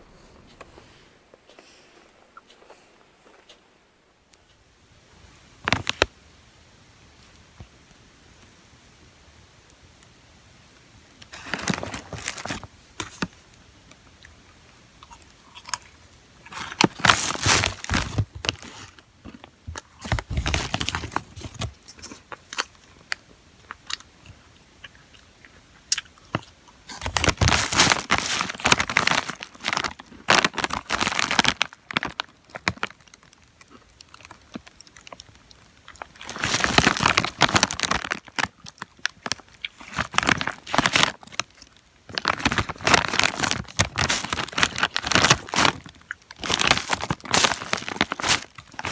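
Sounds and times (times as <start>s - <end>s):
crunchy snacks being chewed: 15.0s - 48.9s.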